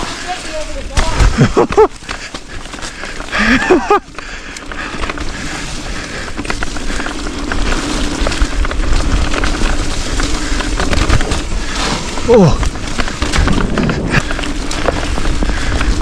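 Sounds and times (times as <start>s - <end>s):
low rumbling: 4.3s - 16.0s.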